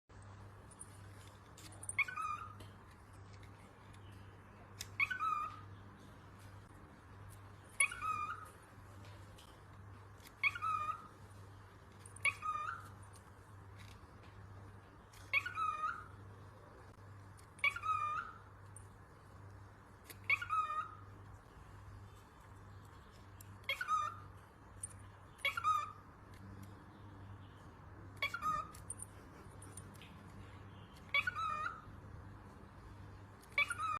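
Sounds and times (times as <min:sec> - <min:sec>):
faint low hum: 0:00.1 - 0:33.9
cockatiel chirping: 0:01.8 - 0:02.7, 0:04.8 - 0:06.1, 0:07.6 - 0:08.6, 0:10.2 - 0:11.2, 0:12.1 - 0:13.0, 0:15.2 - 0:16.6, 0:17.4 - 0:18.6, 0:20.0 - 0:21.1, 0:23.0 - 0:24.4, 0:25.3 - 0:26.0, 0:28.2 - 0:29.0, 0:30.5 - 0:32.0, 0:33.4 - 0:33.9.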